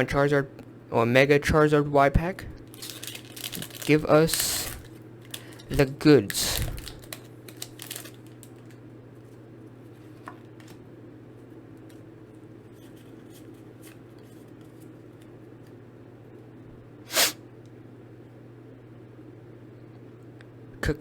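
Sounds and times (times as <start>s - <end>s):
steady low hum: 0.0s - 21.0s
handling of cards and foil pack: 2.7s - 10.8s.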